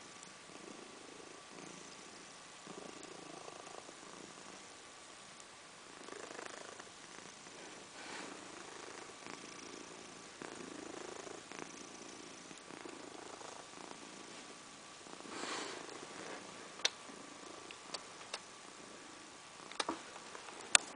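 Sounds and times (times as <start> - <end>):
cat snoring softly: 0.0 - 4.8, 5.9 - 17.7
sharp clicks: 17.7 - 18.5.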